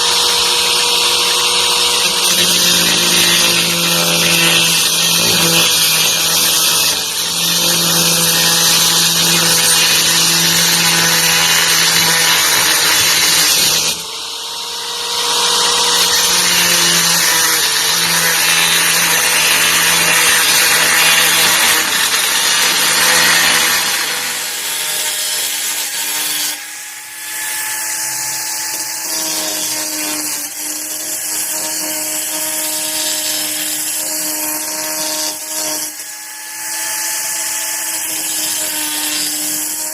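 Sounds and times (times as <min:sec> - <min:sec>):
angle grinder grinding: 0:00.0 - 0:39.9.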